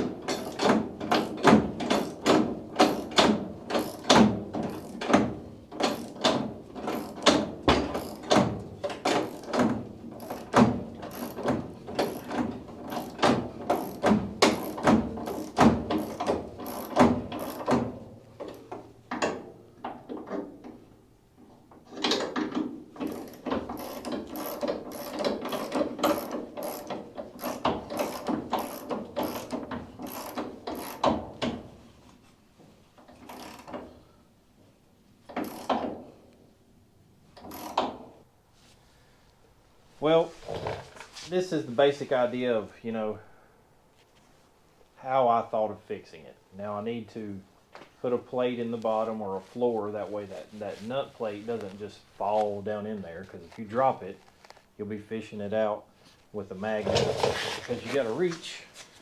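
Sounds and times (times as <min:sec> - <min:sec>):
hand ratchet clicking: 0:00.3 - 0:17.8, 0:23.0 - 0:31.1, 0:33.2 - 0:33.8, 0:35.3 - 0:35.8.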